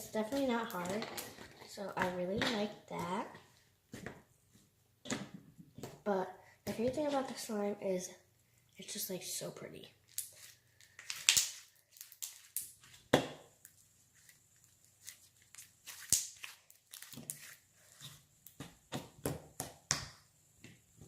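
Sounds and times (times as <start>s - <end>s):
hands squishing slime: 0.0s - 3.3s, 10.1s - 13.0s, 13.6s - 20.1s.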